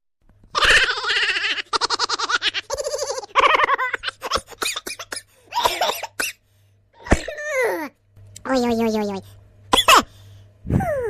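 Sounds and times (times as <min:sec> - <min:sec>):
high-pitched giggling and laughter: 0:00.6 - 0:05.1.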